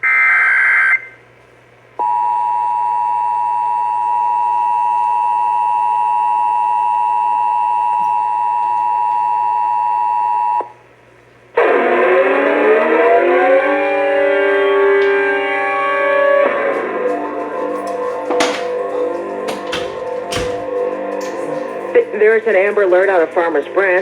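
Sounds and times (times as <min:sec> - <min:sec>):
siren-like sound: 0:11.6 - 0:23.7.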